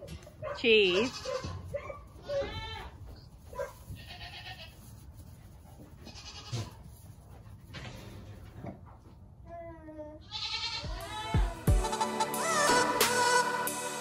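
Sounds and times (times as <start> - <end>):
goat kids bleating faintly: 2.2 - 3.2, 3.9 - 4.9, 6.0 - 6.8, 9.5 - 11.6.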